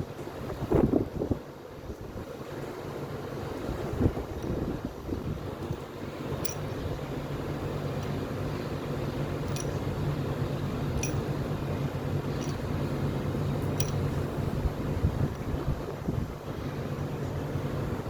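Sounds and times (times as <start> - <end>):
low mechanical hum: 0.0 - 18.0
light sharp clinks: 4.2 - 15.5.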